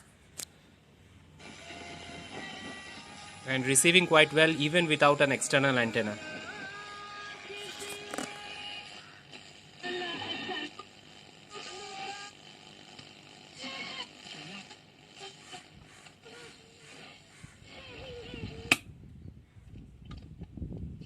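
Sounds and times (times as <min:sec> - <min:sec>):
shortwave radio broadcast snatches: 0:07.5 - 0:17.6
sharp click: 0:18.7 - 0:18.9.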